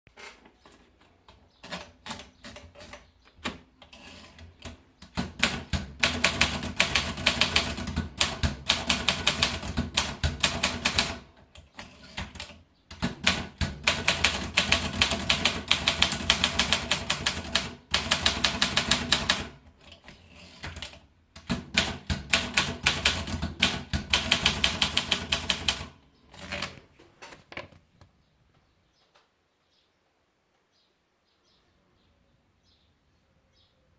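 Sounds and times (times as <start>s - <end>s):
typewriter typing: 1.6s - 26.8s.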